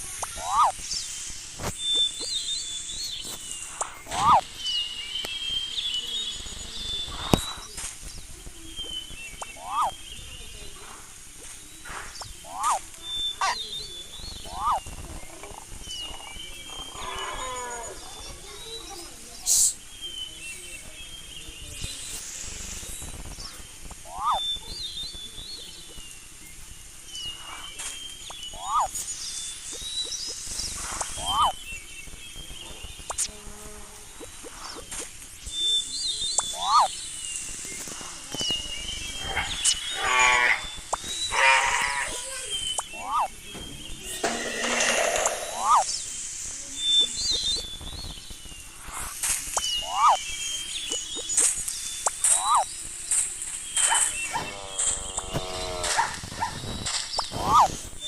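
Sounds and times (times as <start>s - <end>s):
high chirping: 0.0s - 20.9s, 21.6s - 58.0s
bleat-like animal cries: 41.3s - 42.2s.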